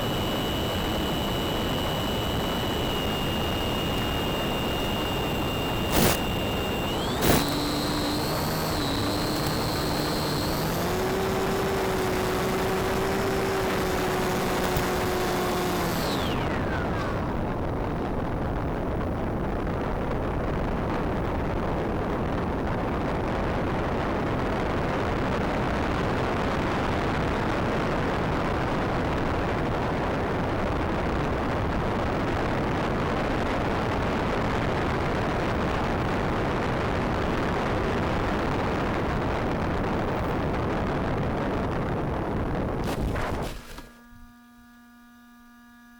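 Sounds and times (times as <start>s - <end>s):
electric motor whine: 0.0s - 18.5s, 41.6s - 45.9s.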